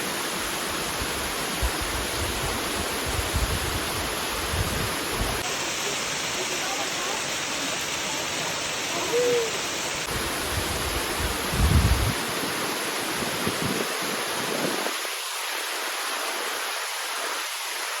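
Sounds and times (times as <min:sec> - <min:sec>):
waterfall roaring: 0:00.0 - 0:18.0.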